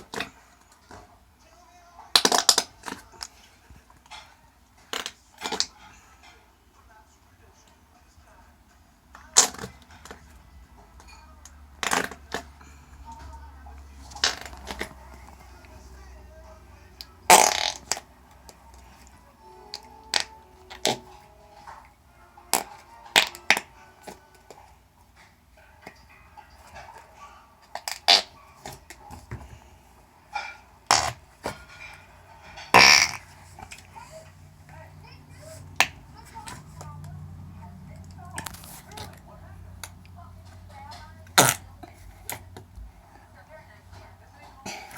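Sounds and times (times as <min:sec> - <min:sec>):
putty making fart noises: 0:32.7 - 0:33.3.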